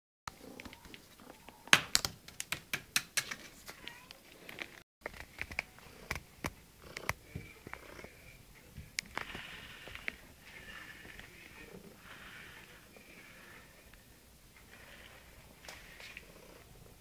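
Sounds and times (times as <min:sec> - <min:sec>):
sharp clicks and taps: 0:01.7 - 0:03.5.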